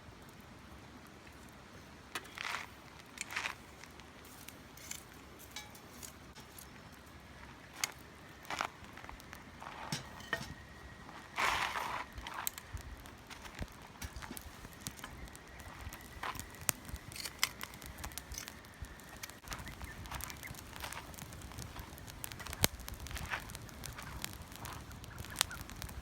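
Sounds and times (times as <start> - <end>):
wood fire crackling: 0.0 - 26.0
fire hissing burst: 9.2 - 26.0.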